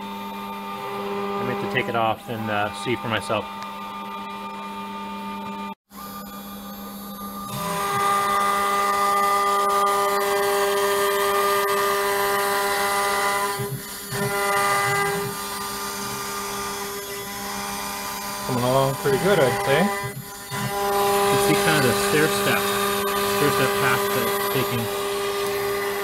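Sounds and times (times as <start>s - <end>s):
router spindle cutting wood: 0.0s - 26.0s.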